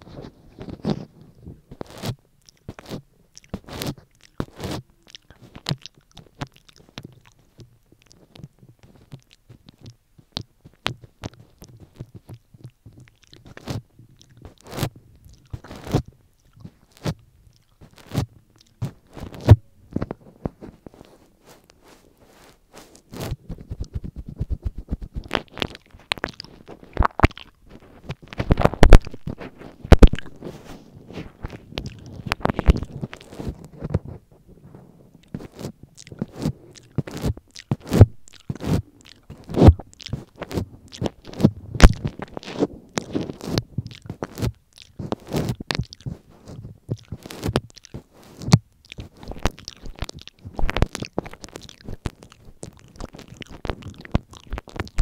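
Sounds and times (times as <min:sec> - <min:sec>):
tongue licking microphone: 0:00.0 - 0:55.0
lips smacking: 0:00.1 - 0:55.0.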